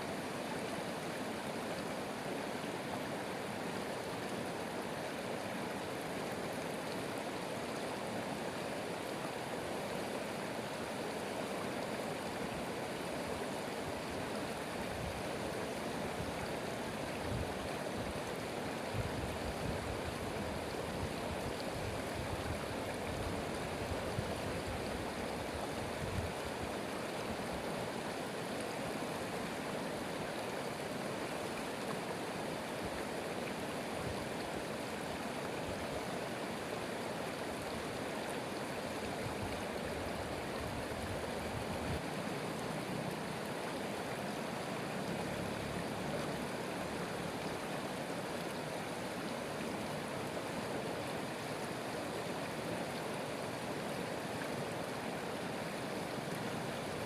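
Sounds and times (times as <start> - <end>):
flowing stream rushing: 0.0 - 57.0.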